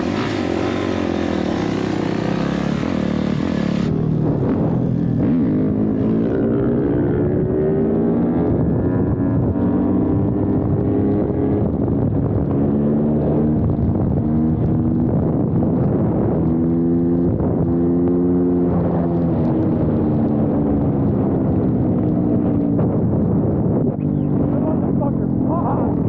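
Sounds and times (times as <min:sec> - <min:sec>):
dirt bike engine revving: 0:00.0 - 0:08.3.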